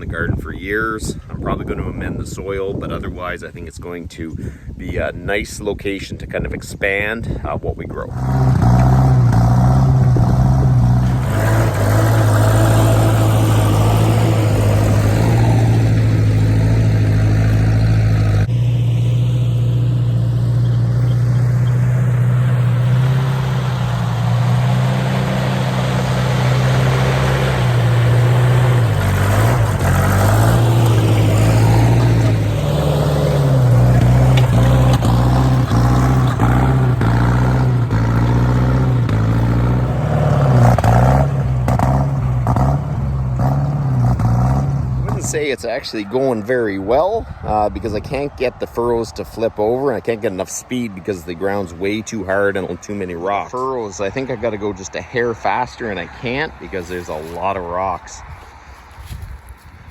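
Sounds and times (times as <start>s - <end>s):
tractor engine running under load: 8.2s - 45.1s.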